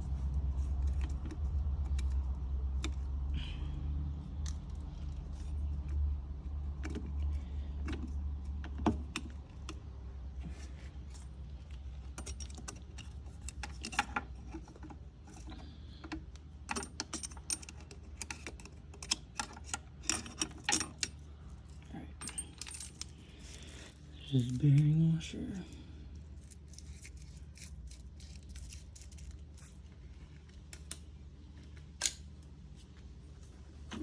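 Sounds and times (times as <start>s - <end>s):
metal parts clinking: 16.7s - 25.0s, 26.4s - 29.8s.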